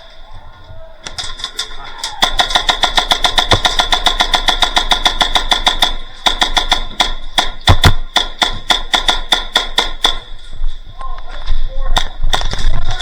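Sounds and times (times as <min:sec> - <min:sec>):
airsoft gun rapid firing: 0:01.1 - 0:10.4, 0:12.0 - 0:13.0
heavy knocks: 0:02.4 - 0:10.3.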